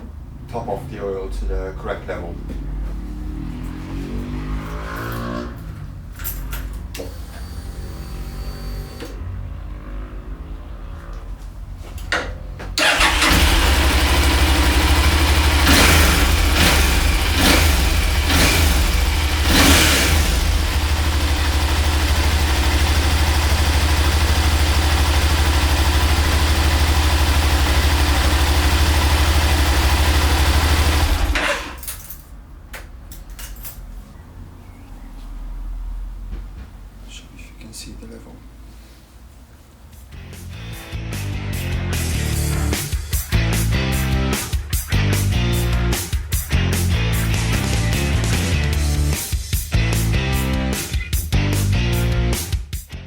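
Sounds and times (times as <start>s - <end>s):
motorcycle engine revving and idling: 1.2s - 11.6s, 12.8s - 31.9s, 41.6s - 44.1s.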